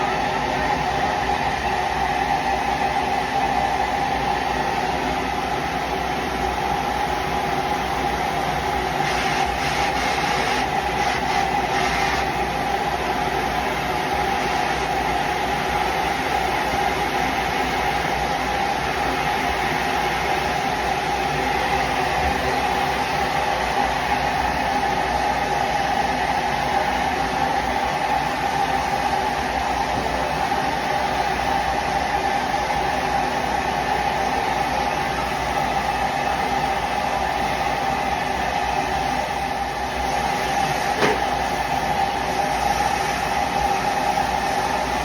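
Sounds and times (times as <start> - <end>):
torch flame hissing: 6.9 - 24.8, 38.6 - 45.0.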